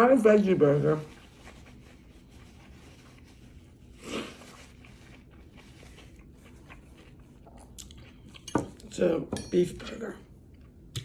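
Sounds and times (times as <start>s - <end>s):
person eating: 1.4s - 9.0s.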